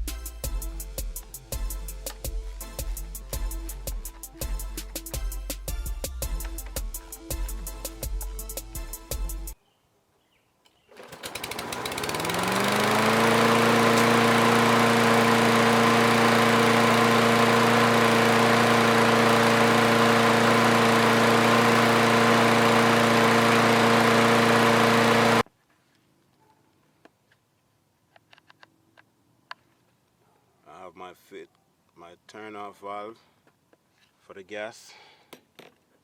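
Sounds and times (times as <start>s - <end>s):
lawn mower engine running: 6.2s - 8.7s, 10.9s - 25.4s.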